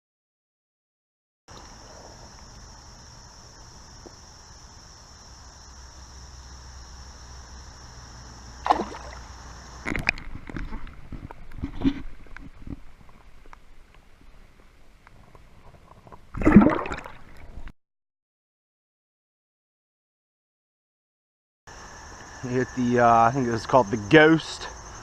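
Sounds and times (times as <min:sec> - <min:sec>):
creek water running: 0:08.4 - 0:13.9
water splashing and sloshing: 0:08.6 - 0:13.8, 0:15.6 - 0:17.7.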